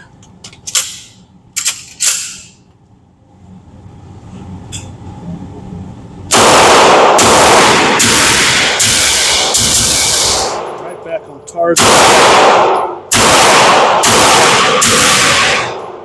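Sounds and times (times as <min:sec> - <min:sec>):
pistol shots: 0:06.3 - 0:10.8, 0:11.8 - 0:16.0.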